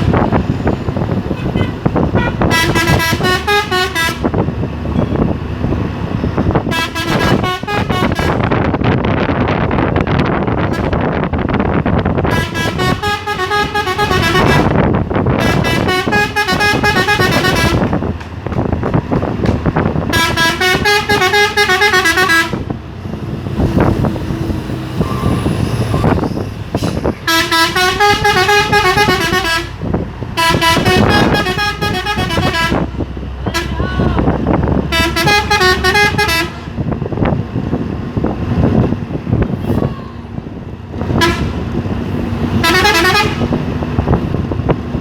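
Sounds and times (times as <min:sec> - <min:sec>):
truck engine and road noise: 0:00.0 - 0:45.0
warbling truck horn tune: 0:01.3 - 0:04.4, 0:06.5 - 0:08.8, 0:12.2 - 0:18.1, 0:20.0 - 0:22.8, 0:27.2 - 0:34.2, 0:34.8 - 0:36.8, 0:41.1 - 0:41.7, 0:42.5 - 0:43.7.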